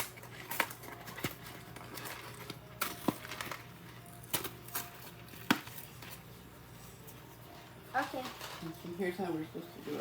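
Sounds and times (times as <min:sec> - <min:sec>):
objects clicking and knocking: 0:00.0 - 0:06.3.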